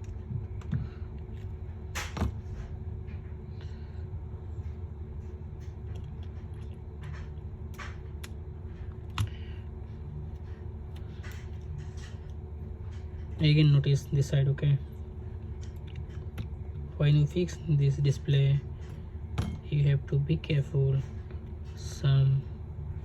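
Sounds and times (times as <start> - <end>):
low background hum: 0.0 - 23.0.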